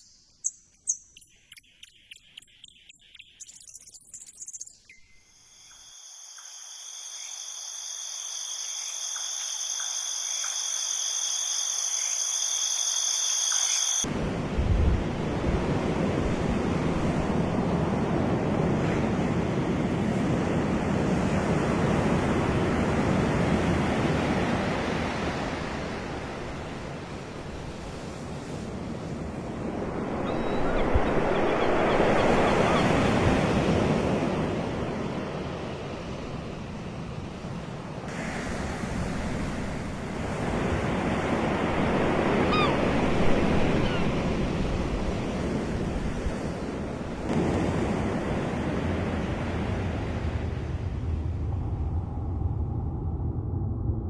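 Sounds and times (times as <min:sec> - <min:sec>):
high insect buzz: 0:05.2 - 0:14.0.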